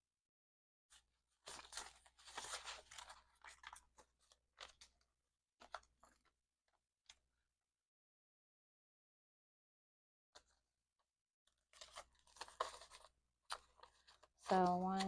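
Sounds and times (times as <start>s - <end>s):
paper banknotes rustling: 1.4s - 6.3s, 11.7s - 15.0s.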